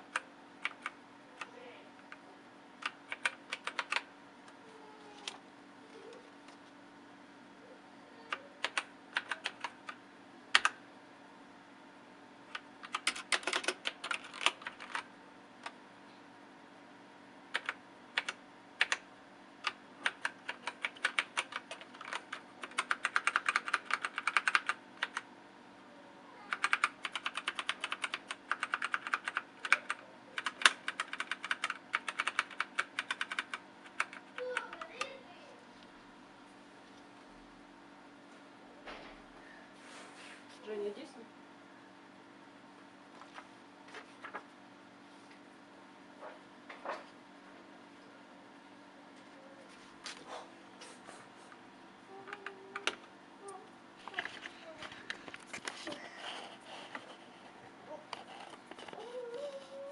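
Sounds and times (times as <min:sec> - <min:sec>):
mechanical keyboard typing: 0:00.0 - 0:02.2, 0:02.8 - 0:04.1, 0:08.3 - 0:10.8, 0:12.5 - 0:15.8, 0:17.5 - 0:19.0, 0:19.6 - 0:25.3, 0:26.5 - 0:34.8, 0:52.2 - 0:53.0.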